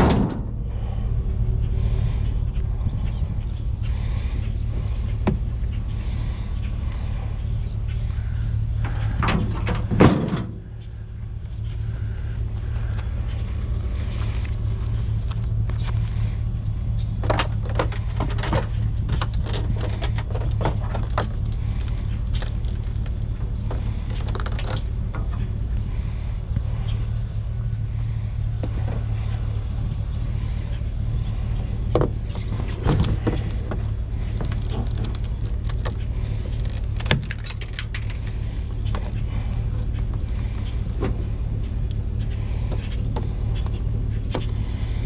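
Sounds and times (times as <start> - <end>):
vehicle engine drone: 0.0 - 45.0
light clinks and rattles: 32.1 - 45.0.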